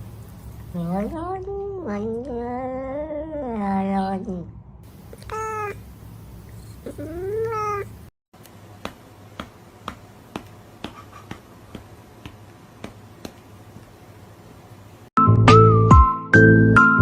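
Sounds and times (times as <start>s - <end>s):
cat meowing: 5.1s - 5.8s, 6.8s - 7.9s.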